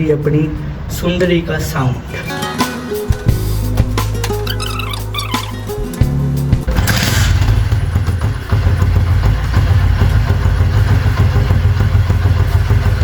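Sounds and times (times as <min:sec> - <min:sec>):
motorcycle engine idling: 0:05.8 - 0:13.0.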